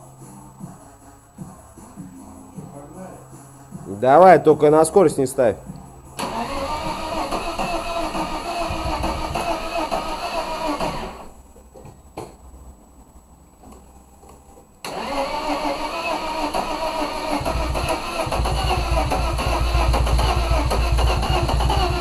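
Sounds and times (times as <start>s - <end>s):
car engine running: 6.2s - 11.3s, 16.0s - 22.0s.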